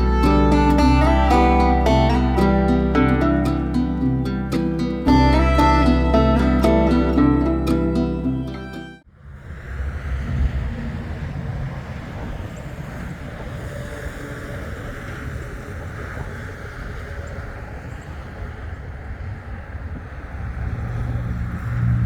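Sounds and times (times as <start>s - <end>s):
vehicle passing: 0.0s - 14.4s, 20.1s - 22.0s
road traffic noise: 0.0s - 22.0s
wind on microphone: 9.2s - 22.0s.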